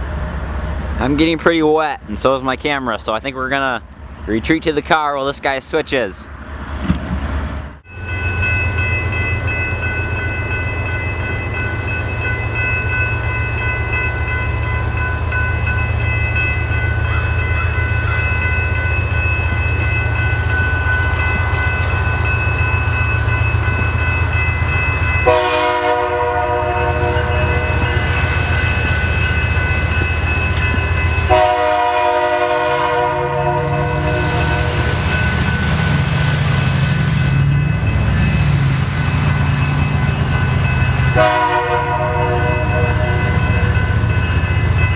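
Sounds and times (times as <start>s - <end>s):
diesel locomotive rumble: 0.0s - 44.9s
locomotive horn blasts: 25.2s - 28.1s, 31.3s - 34.9s, 41.2s - 43.4s.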